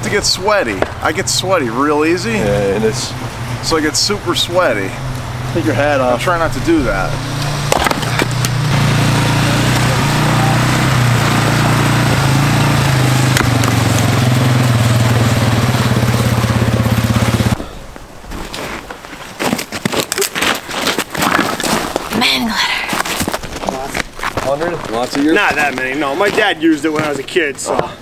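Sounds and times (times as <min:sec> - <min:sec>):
chainsaw engine running: 0:05.6 - 0:17.6.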